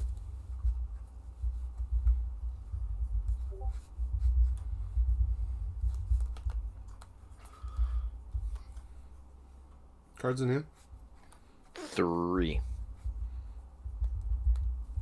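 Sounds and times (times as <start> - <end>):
playing cards tapping and clicking: 0.0 - 9.1.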